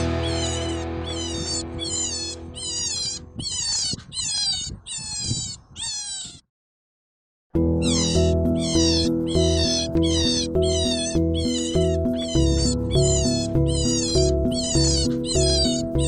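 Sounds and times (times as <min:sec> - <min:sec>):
background music: 0:00.0 - 0:02.6, 0:07.6 - 0:16.0
animal high-pitched calls: 0:00.0 - 0:06.5, 0:07.7 - 0:16.0.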